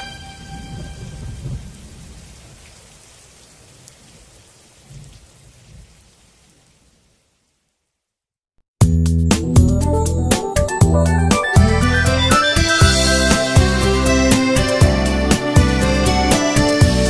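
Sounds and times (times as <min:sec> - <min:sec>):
steady rain: 0:00.0 - 0:08.1
low thunder rumbles: 0:00.3 - 0:06.2.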